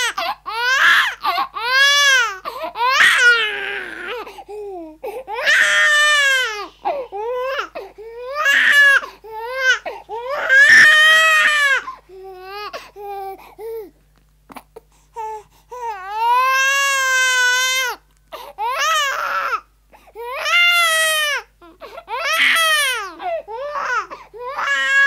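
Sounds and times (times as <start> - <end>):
infant crying: 0.0 - 13.9, 15.2 - 25.0.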